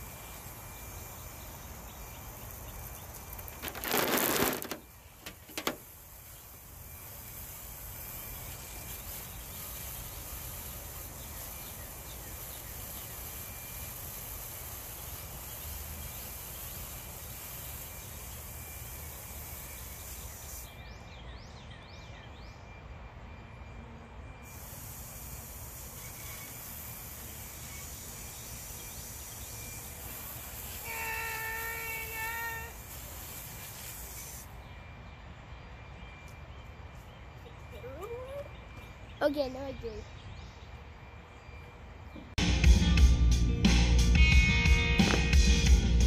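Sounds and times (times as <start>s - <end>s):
even outdoor hiss: 0.0s - 46.0s
faint high chirps: 4.9s - 21.6s, 22.3s - 42.4s.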